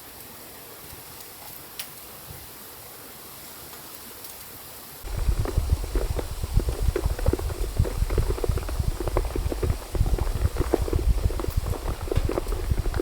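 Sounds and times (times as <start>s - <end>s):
heavy rain on tent fabric: 3.4s - 13.0s.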